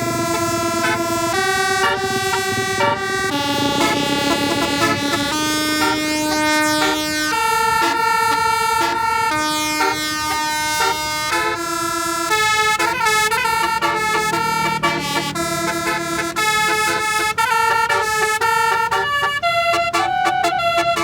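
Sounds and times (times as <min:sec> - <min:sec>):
musical bus air horn playing tune: 0:00.0 - 0:21.0.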